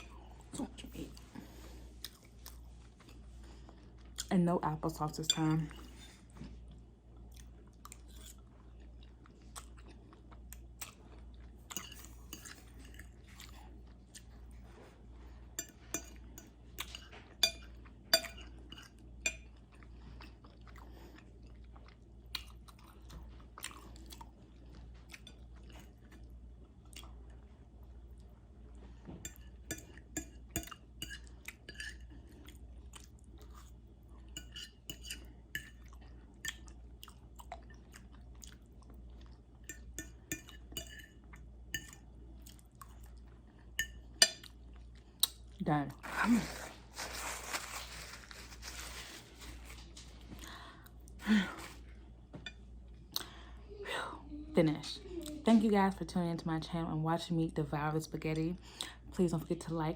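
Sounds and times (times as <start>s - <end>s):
faint low hum: 0.0s - 59.9s
wet chewing and lip smacks: 20.1s - 25.8s, 35.6s - 39.8s.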